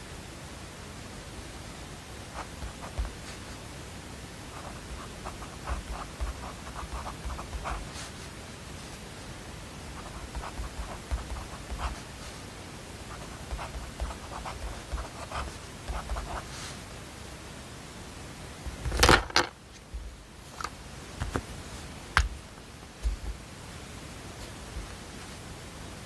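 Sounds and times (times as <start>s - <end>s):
steady background hiss: 0.0s - 26.0s
pen writing on paper: 2.4s - 3.6s, 4.6s - 8.2s, 10.0s - 12.4s, 13.1s - 16.6s.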